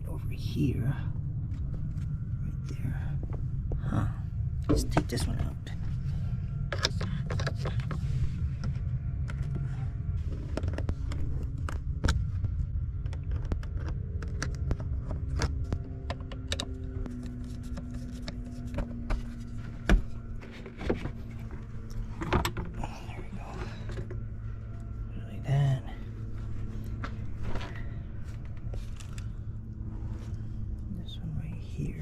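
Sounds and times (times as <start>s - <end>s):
steady low hum: 0.0s - 32.0s
car parts clicking and knocking: 6.6s - 8.0s, 10.4s - 22.8s.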